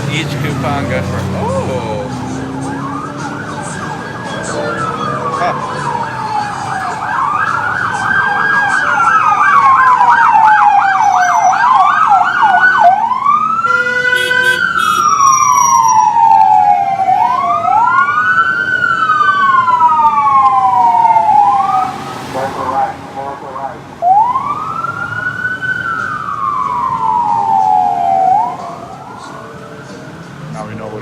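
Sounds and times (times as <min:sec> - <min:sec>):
emergency vehicle siren: 0:00.2 - 0:31.0
short harsh horn blast: 0:13.7 - 0:15.2.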